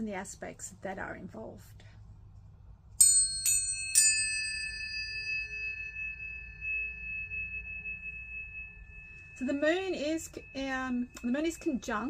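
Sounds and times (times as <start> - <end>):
tuning forks ringing: 3.0 - 12.0.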